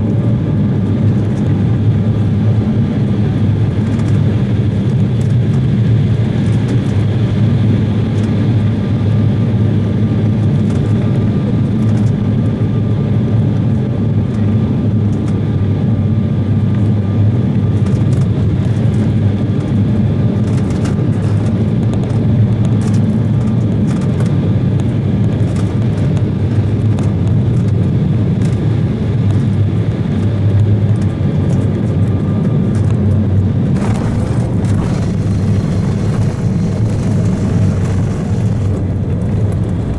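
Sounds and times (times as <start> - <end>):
jet engines and airflow rumble: 0.0 - 39.9.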